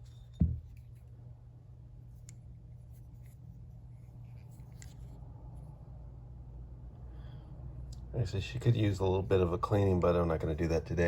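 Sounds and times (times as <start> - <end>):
pistol parts rubbing and clicking: 0.0 - 1.2, 2.0 - 5.3
steady low hum: 0.0 - 11.0.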